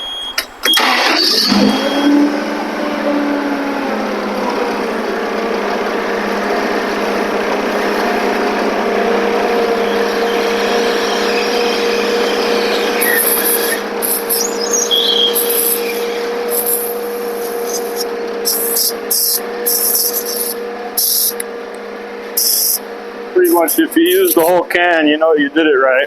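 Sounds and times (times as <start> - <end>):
forklift engine whining: 0.0 - 26.0
short hissing bursts: 15.4 - 21.4, 22.4 - 22.8.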